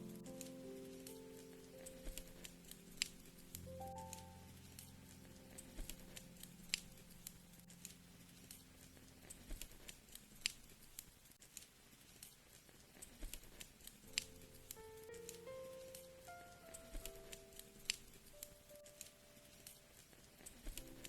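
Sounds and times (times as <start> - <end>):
low soft music chord: 0.0 - 9.2
wood fire crackling: 0.0 - 21.0.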